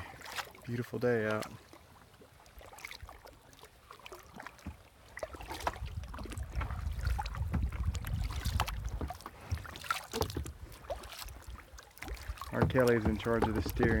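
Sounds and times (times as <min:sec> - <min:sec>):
paddles splashing in water: 0:00.0 - 0:14.0.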